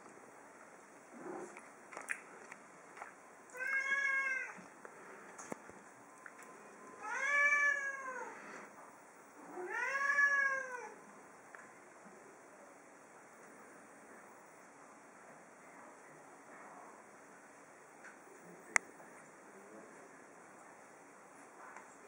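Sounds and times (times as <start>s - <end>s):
cat meowing: 3.5s - 4.6s, 7.0s - 8.4s, 9.4s - 11.0s.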